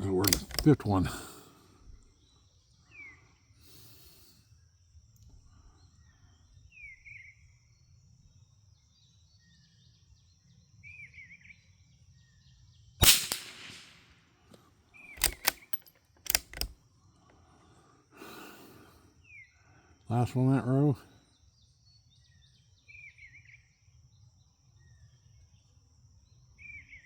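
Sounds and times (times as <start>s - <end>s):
rifle bolt metallic clicks: 0.0s - 1.1s, 13.0s - 14.0s, 15.2s - 16.7s
rifle shot: 0.2s - 0.8s, 13.0s - 14.1s.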